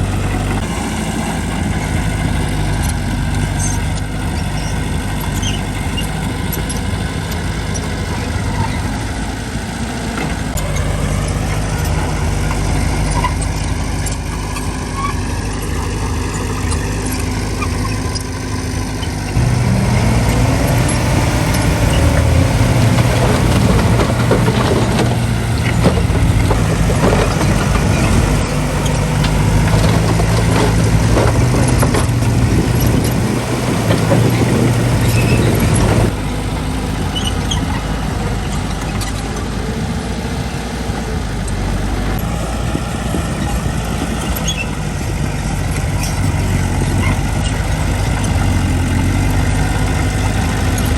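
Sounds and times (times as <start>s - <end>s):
heavy diesel engine revving: 0.0s - 50.9s
clattering and knocking: 19.4s - 36.6s.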